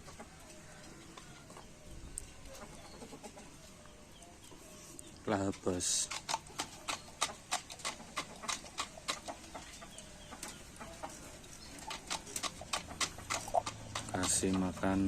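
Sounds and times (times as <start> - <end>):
chickens clucking: 0.0 - 15.0
sharp clicks: 6.0 - 9.4.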